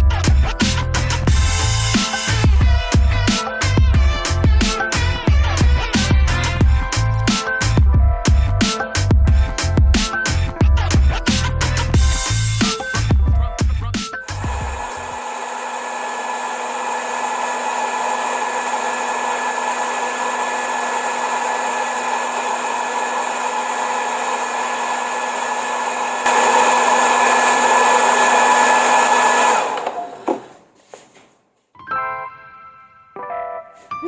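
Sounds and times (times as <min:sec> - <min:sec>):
hair dryer whining: 0:01.0 - 0:06.7, 0:11.7 - 0:13.1, 0:14.3 - 0:30.7.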